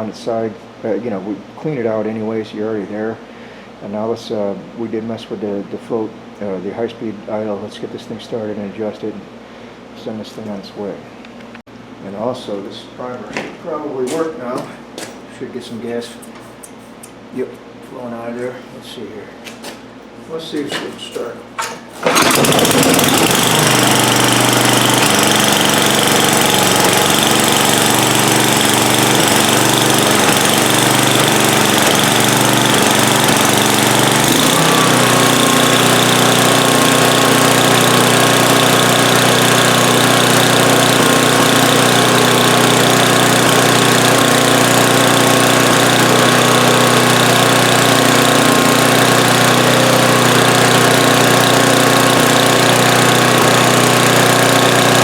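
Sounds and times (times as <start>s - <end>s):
snowblower engine running: 22.0s - 55.0s.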